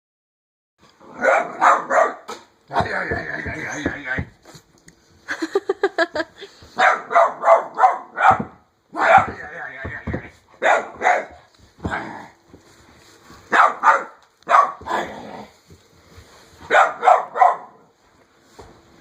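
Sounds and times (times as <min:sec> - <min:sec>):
dog barking: 0:01.2 - 0:02.9, 0:06.8 - 0:09.4, 0:10.6 - 0:11.5, 0:13.5 - 0:15.1, 0:16.7 - 0:17.9.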